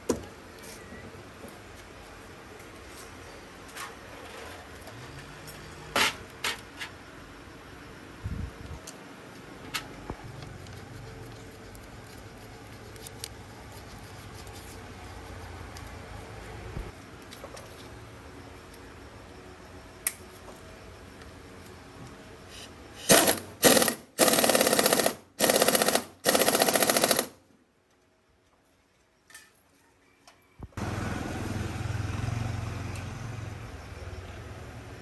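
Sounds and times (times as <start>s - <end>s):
pneumatic impact wrench bursts: 23.0s - 27.4s.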